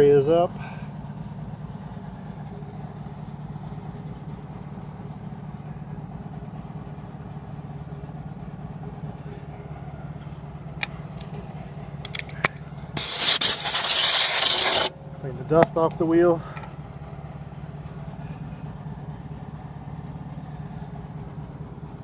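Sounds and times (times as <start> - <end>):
low motor hum: 0.0 - 22.0
compressed air hissing: 13.0 - 14.9.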